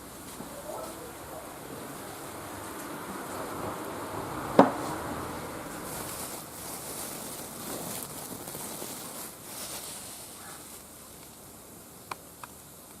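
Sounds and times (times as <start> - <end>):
fire crackles: 0.0 - 13.0
fire hissing: 5.3 - 12.1.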